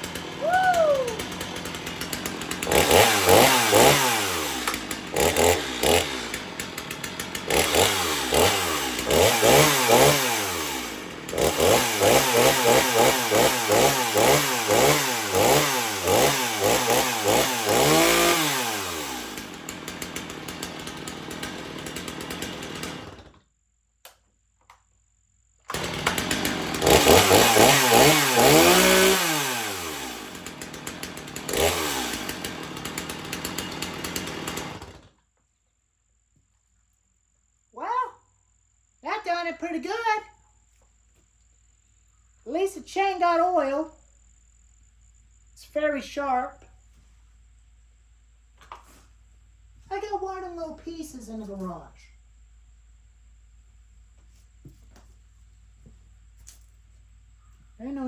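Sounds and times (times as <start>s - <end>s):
chainsaw engine revving: 0.0s - 23.4s, 25.7s - 35.1s.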